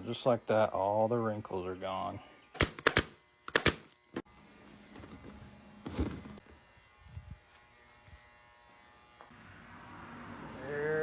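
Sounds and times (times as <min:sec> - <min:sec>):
pneumatic staple gun shots: 0:02.6 - 0:04.0.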